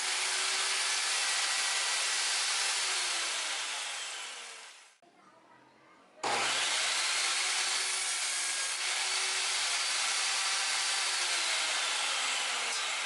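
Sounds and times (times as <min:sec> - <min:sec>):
table saw cutting wood: 0:00.0 - 0:05.0, 0:06.2 - 0:13.0.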